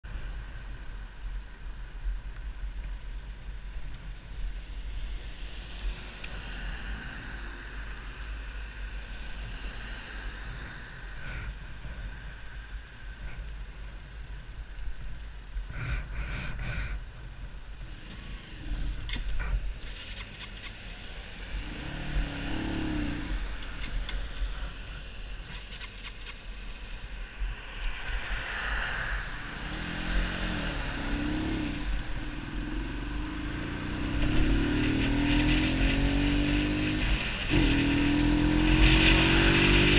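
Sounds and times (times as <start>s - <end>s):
motorcycle engine bogging and stalling: 17.5s - 20.9s, 23.3s - 24.8s, 25.4s - 26.6s
motorcycle engine revving: 17.8s - 26.4s, 29.4s - 39.9s.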